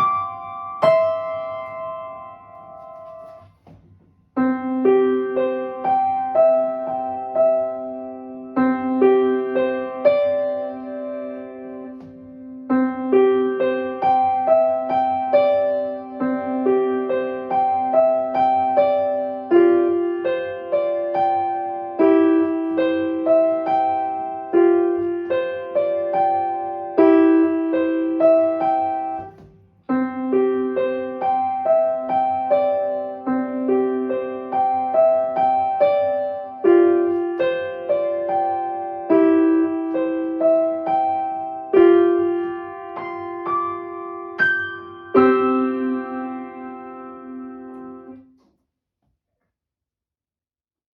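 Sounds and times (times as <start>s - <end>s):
solo piano broken chords: 0.0s - 48.5s.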